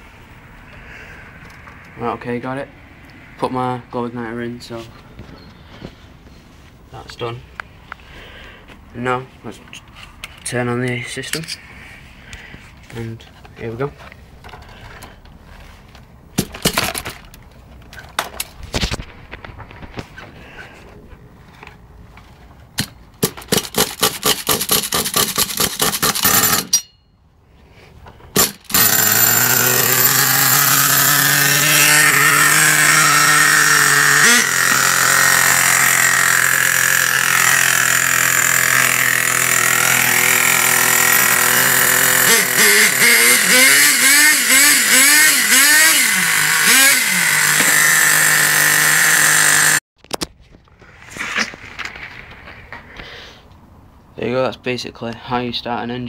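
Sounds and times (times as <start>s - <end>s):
small nitro engine running: 28.4s - 49.8s.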